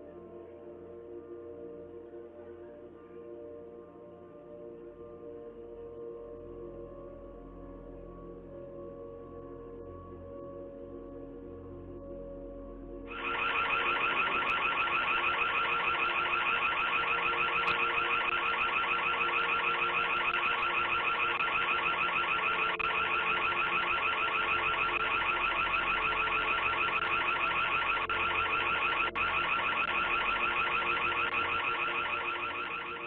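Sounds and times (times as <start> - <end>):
pulsing electronic alarm siren: 13.1 - 33.0.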